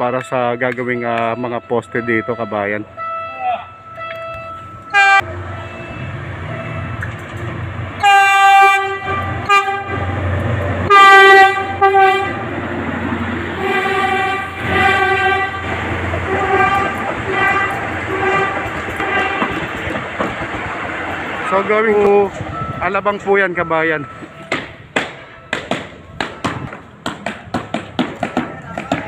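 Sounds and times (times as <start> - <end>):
low train rumble: 0.0 - 29.0
train horn blasts: 2.1 - 7.0, 8.0 - 12.6, 13.6 - 19.7.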